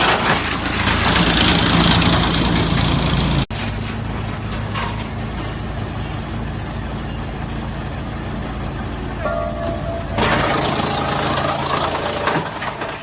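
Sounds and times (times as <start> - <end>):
wood chipper chipping: 0.0 - 3.4, 9.2 - 13.0
wood chipper running: 0.0 - 13.0.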